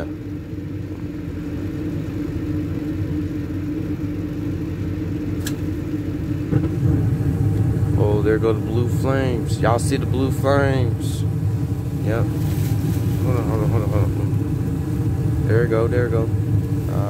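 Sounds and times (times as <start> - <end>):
burners lighting rumble: 0.0 - 17.0
furnace motor humming: 0.0 - 17.0
sharp click: 5.4 - 5.7.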